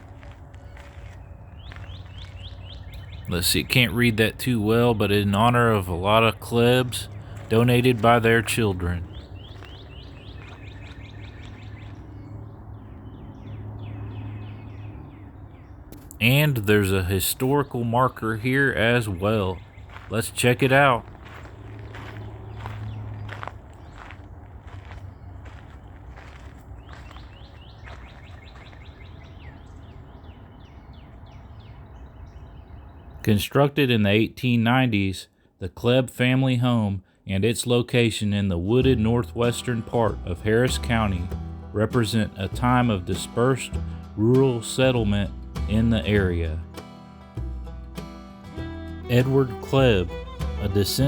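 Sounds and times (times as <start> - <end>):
bird chirping: 0.0 - 24.2, 24.8 - 33.3
low outdoor rumble: 0.0 - 33.3, 48.5 - 51.0
songbird whistling: 0.6 - 3.3, 9.0 - 12.0.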